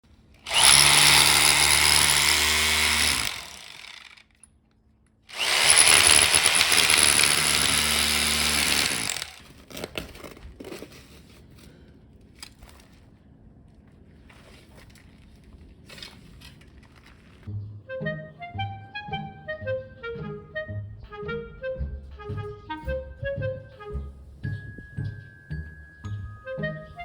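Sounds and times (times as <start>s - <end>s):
electric hammer drill running: 0.4s - 4.3s, 5.3s - 9.5s.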